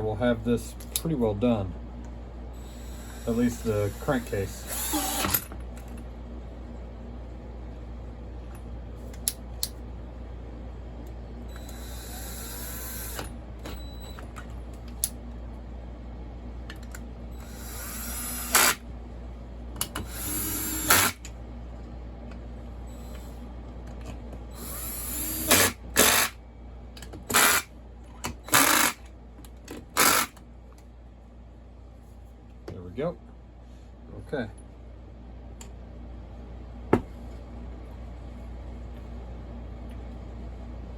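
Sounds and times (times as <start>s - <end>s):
power drill running in bursts: 2.6s - 5.4s, 11.6s - 13.2s, 17.4s - 18.8s, 20.0s - 21.2s, 24.6s - 26.3s, 27.3s - 27.7s, 28.5s - 29.0s, 30.0s - 30.3s.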